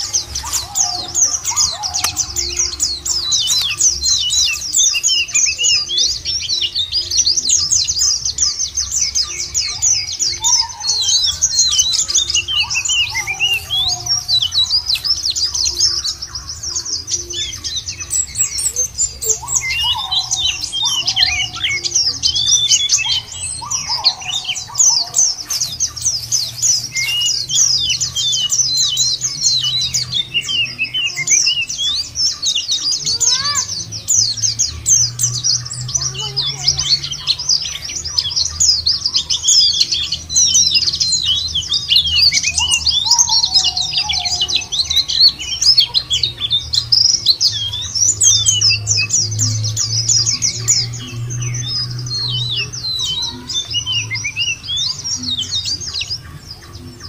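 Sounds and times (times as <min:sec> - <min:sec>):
birds twittering chirps: 0:00.0 - 0:57.0.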